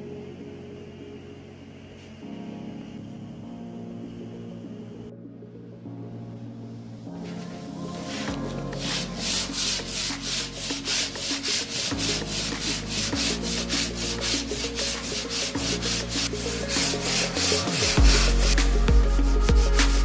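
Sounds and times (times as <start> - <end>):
background music: 0.0 - 20.0
hand sanding wood: 8.0 - 20.0.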